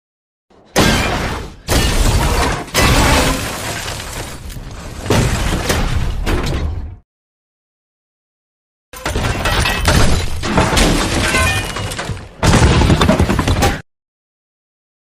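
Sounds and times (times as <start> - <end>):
heavy crashes and smashing debris: 0.8 - 6.9, 9.0 - 13.8.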